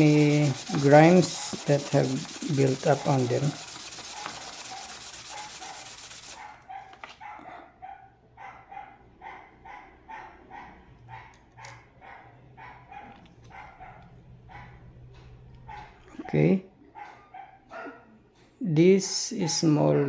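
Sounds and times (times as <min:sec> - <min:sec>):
dog barking: 0:03.0 - 0:14.9, 0:15.6 - 0:18.2.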